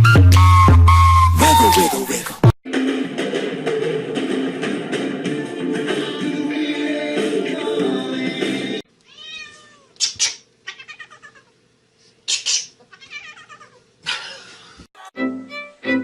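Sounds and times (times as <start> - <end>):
music: 0.0 - 2.1, 2.7 - 8.8, 15.0 - 16.0
cat meowing and yowling: 9.1 - 10.0, 10.7 - 11.5, 12.9 - 13.8.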